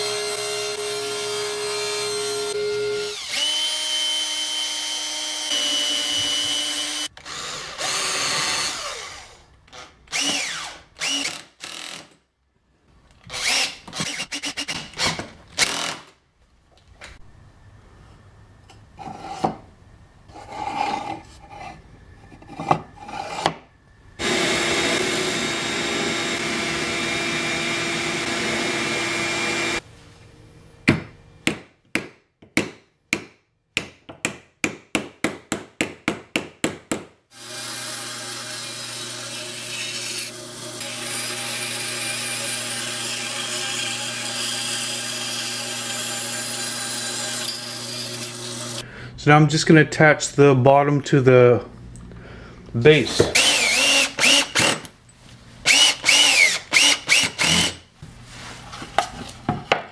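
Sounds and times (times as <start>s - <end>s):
power tool motor cutting wood: 24.2s - 29.8s, 53.2s - 54.8s, 55.6s - 57.8s.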